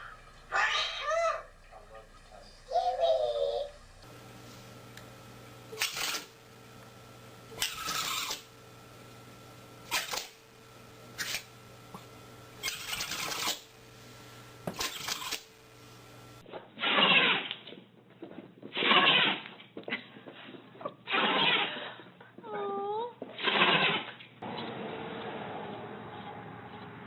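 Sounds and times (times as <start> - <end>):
animal sneezing loudly: 16.8 - 17.5, 18.7 - 19.4, 21.1 - 21.8, 23.4 - 24.1
pet sneezing: 16.8 - 17.5, 18.7 - 19.4, 21.1 - 21.8.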